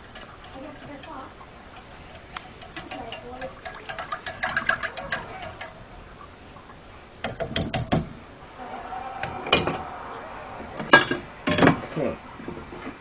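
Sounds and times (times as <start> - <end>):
kitchenware knocking and clattering: 2.6 - 5.8, 7.2 - 8.1, 9.5 - 9.8, 10.8 - 11.8.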